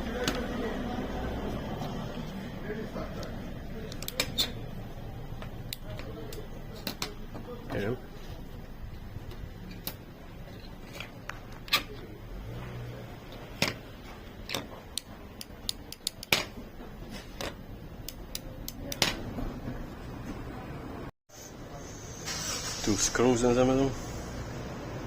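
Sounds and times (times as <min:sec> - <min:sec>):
plastic switch parts clicking: 0:03.2 - 0:04.6, 0:14.4 - 0:16.6.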